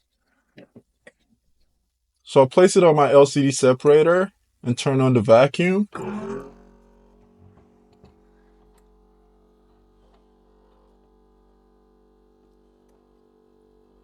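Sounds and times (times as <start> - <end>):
vacuum pump humming: 4.7 - 14.0.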